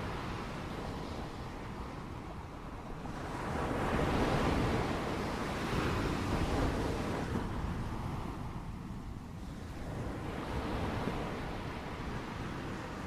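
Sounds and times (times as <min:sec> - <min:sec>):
wind rumbling on microphone: 0:00.0 - 0:13.0.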